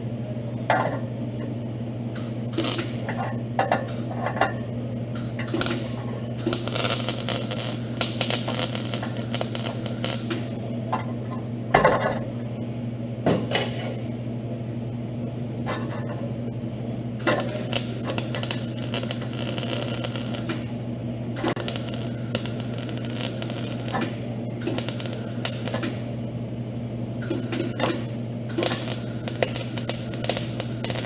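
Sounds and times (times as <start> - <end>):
steady electrical hum: 0.0 - 31.0
welding arc crackle and spatter: 2.2 - 4.4, 5.2 - 10.5, 17.2 - 20.7, 21.4 - 26.0, 27.2 - 31.0.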